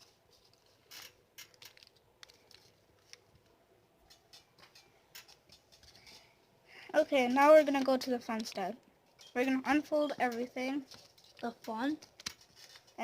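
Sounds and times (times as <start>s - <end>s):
paper rustling and crackling: 0.0s - 6.4s, 10.2s - 13.0s.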